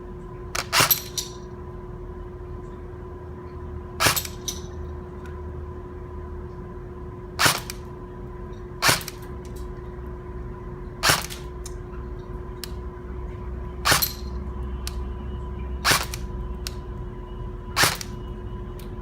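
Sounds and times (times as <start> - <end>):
steady hum: 0.0 - 19.0
airsoft gun shots: 7.4 - 7.7, 17.8 - 18.1.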